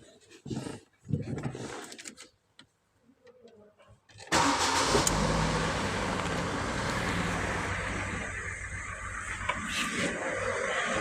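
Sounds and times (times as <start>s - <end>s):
car engine starting and idling: 4.3s - 11.0s.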